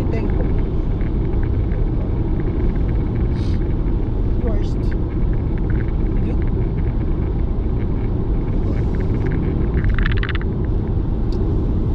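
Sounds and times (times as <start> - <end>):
wind buffeting microphone: 0.0 - 11.9
short rattle: 4.8 - 10.8.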